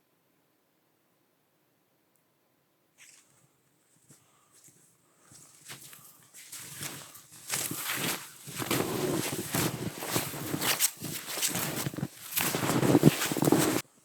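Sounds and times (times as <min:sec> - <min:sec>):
snowshoes crunching through snow: 0:03.9 - 0:14.0.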